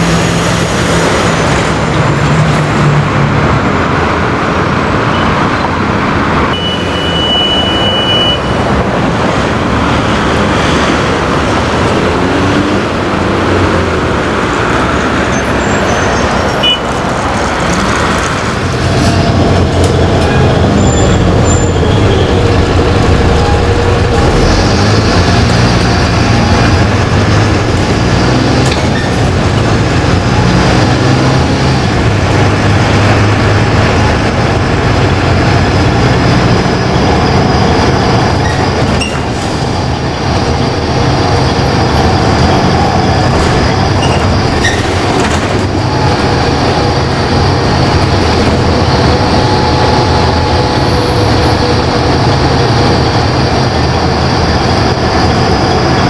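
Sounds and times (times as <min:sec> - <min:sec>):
bus engine droning: 0:00.0 - 0:56.0
road rumble: 0:00.0 - 0:56.0.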